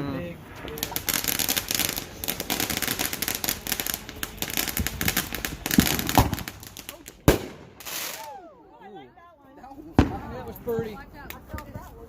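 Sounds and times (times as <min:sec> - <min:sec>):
deep firework booms: 0:00.4 - 0:08.2, 0:09.9 - 0:10.9
fireworks crackling pops: 0:00.4 - 0:08.4, 0:09.8 - 0:12.0.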